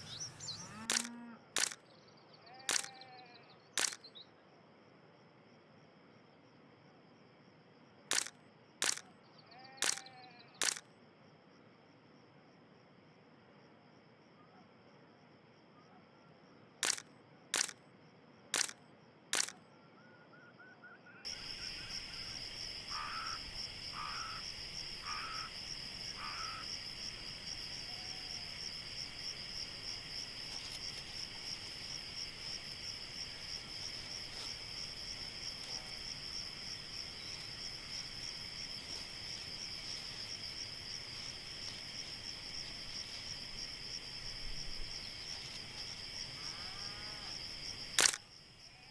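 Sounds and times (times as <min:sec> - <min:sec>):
crickets chorus: 0:00.0 - 0:48.9
camera shutter clicks: 0:00.9 - 0:01.8, 0:02.7 - 0:02.9, 0:03.8 - 0:04.0, 0:08.1 - 0:09.0, 0:09.8 - 0:10.0, 0:10.6 - 0:10.8, 0:16.8 - 0:17.0, 0:17.6 - 0:17.8, 0:48.0 - 0:48.2.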